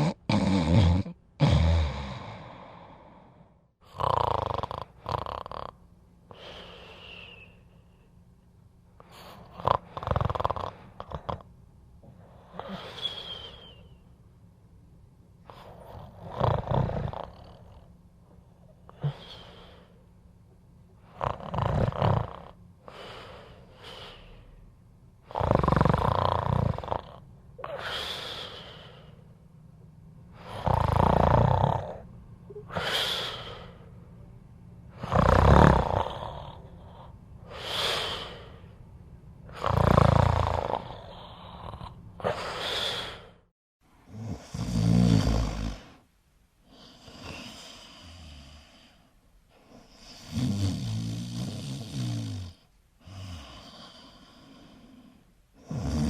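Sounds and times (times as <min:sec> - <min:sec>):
person snoring loudly: 0:00.0 - 0:05.8, 0:09.4 - 0:11.5, 0:16.0 - 0:17.8, 0:21.1 - 0:22.6, 0:25.3 - 0:29.0, 0:30.4 - 0:32.1, 0:34.9 - 0:36.8, 0:39.5 - 0:43.3, 0:44.1 - 0:46.0, 0:50.1 - 0:56.0.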